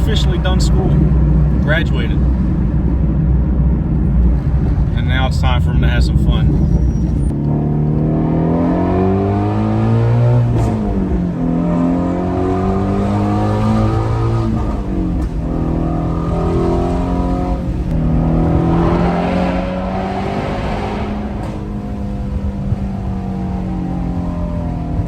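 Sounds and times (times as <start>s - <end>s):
car engine revving through gears: 6.3s - 25.0s.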